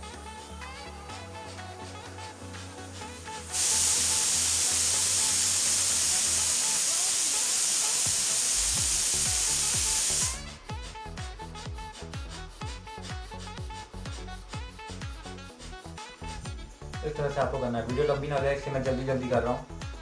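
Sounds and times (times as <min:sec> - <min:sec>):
background music with beat: 0:00.0 - 0:20.0
loud steady hiss: 0:01.2 - 0:11.0.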